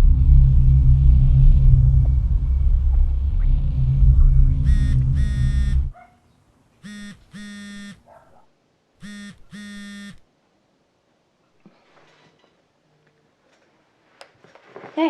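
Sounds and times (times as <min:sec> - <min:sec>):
loud deep rumble: 0:00.0 - 0:05.9
electronic phone ringing: 0:04.7 - 0:05.9, 0:06.8 - 0:08.0, 0:09.0 - 0:10.2.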